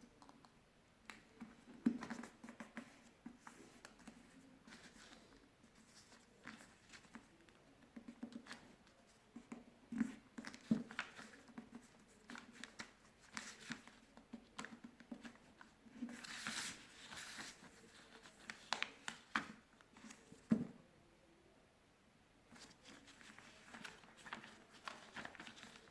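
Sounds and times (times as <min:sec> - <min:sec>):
paper being folded and creased: 0:01.1 - 0:07.3, 0:10.0 - 0:20.4, 0:22.5 - 0:25.9.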